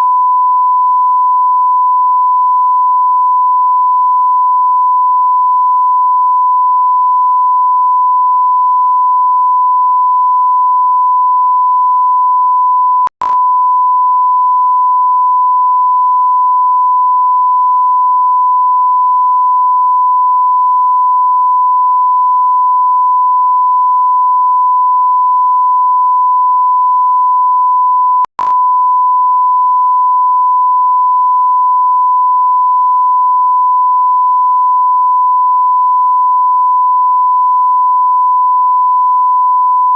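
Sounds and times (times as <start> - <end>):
steady electronic sine tone: 0.0 - 39.9
click: 13.1 - 13.4, 28.2 - 28.6.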